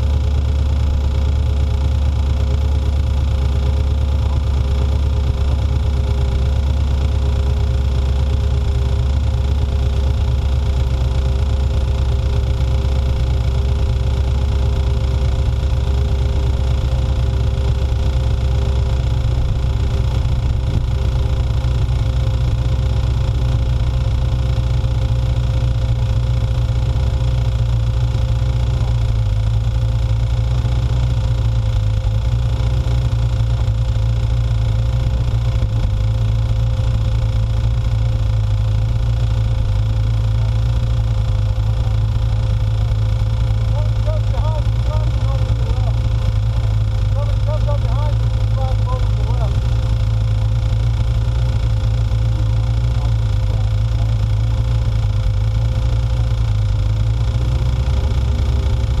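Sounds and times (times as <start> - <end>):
motorcycle engine running: 0.0 - 59.0
low rumble of wind: 0.8 - 59.0.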